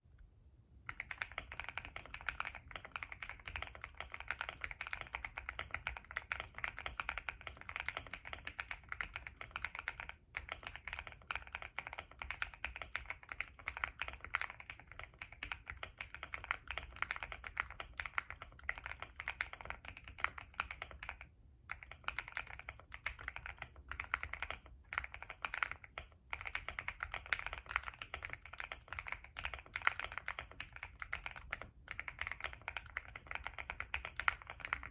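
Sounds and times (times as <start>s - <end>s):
mechanical keyboard typing: 0.9s - 34.9s.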